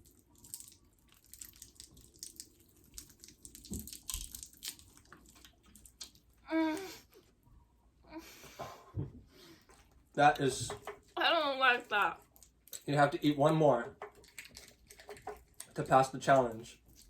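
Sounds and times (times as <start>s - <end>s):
hard candy crunching in mouth: 0.0s - 6.4s, 12.2s - 13.0s, 14.0s - 17.0s.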